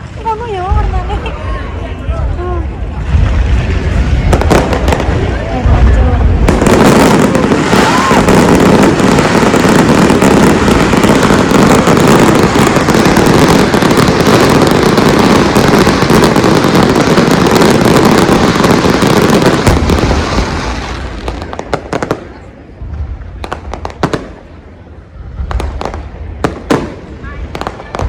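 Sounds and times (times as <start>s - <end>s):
fireworks bangs and crackling: 0.0s - 28.0s.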